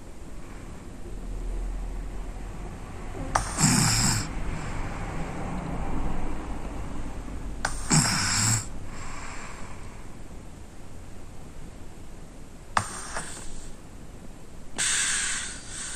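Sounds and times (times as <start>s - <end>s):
quiet breathing: 3.1s - 5.9s, 7.6s - 10.5s, 12.8s - 13.9s, 14.8s - 15.9s
boy snoring: 3.2s - 4.9s, 7.6s - 9.8s, 12.8s - 13.8s, 14.8s - 15.9s.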